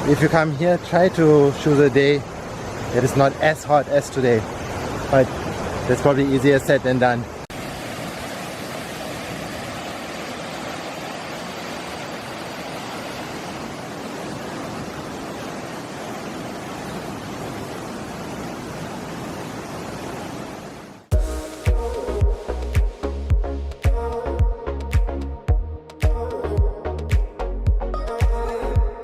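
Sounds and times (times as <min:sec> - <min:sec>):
waterfall rushing: 0:00.0 - 0:22.7
background music with beat: 0:21.1 - 0:29.0.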